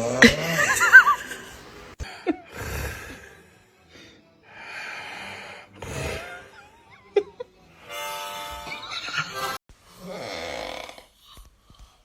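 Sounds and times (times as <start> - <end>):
person snoring: 0.0 - 6.7, 9.8 - 11.4
snort with whistling wheeze: 5.1 - 6.6.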